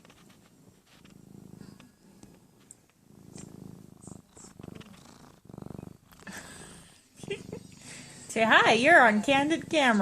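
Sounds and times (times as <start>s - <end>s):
cat purring softly: 0.0s - 10.0s.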